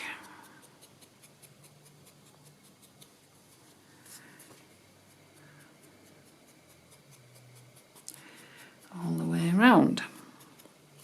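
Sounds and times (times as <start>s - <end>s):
sponge dabbing and rubbing: 0.0s - 11.0s.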